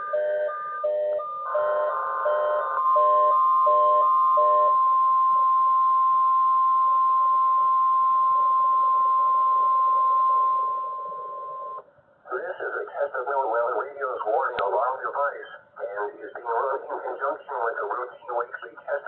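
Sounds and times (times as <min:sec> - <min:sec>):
loud steady alarm tone: 0:00.0 - 0:11.8
short beeps at two pitches: 0:00.8 - 0:11.8.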